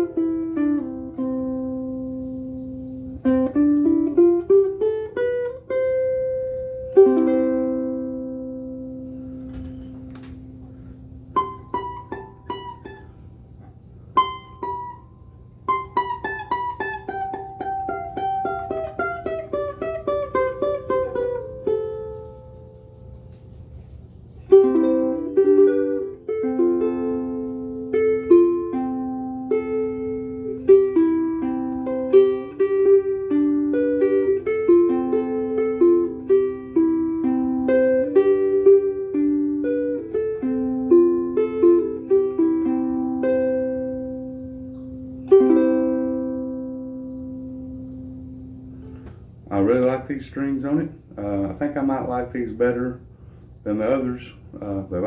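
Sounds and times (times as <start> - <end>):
fingerpicked ukulele: 0.0 - 50.0.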